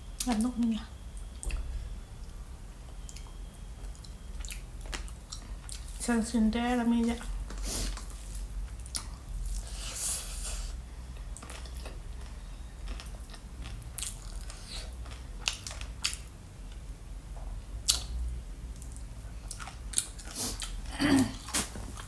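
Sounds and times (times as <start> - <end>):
fruit being bitten and chewed: 11.4 - 16.3.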